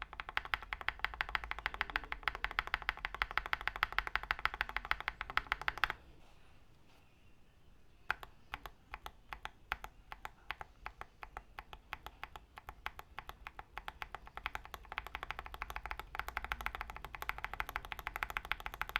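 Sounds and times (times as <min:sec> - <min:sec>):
typing on mechanical keyboard: 0:00.0 - 0:06.0, 0:08.1 - 0:18.9.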